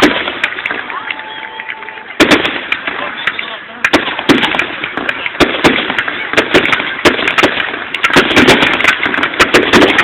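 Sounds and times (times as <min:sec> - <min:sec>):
fireworks crackling: 0:00.0 - 0:10.0
firework shell bursts: 0:02.2 - 0:10.0.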